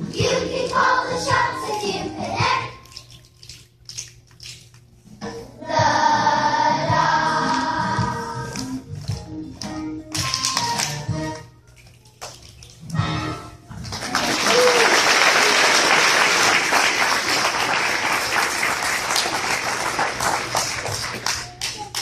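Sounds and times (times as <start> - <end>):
audience applauding: 13.8 - 22.0.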